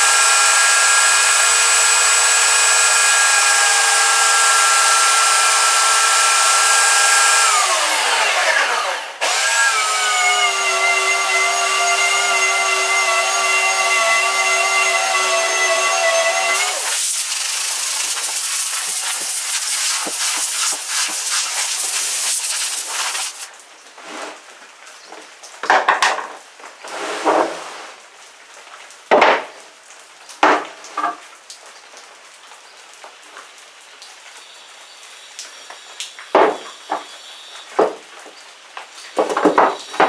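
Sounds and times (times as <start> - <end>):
loud hiss: 16.6 - 23.5
wooden boards knocking: 39.2 - 40.0.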